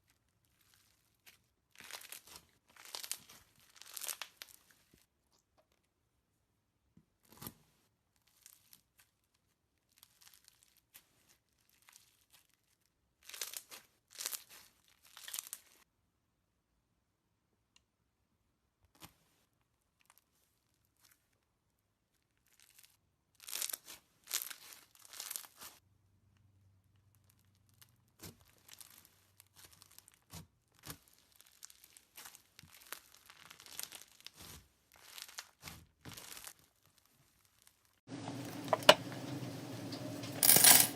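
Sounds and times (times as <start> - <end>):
slime crackling and crunching: 0.0 - 5.1, 8.2 - 15.8, 22.2 - 25.8, 27.1 - 38.0.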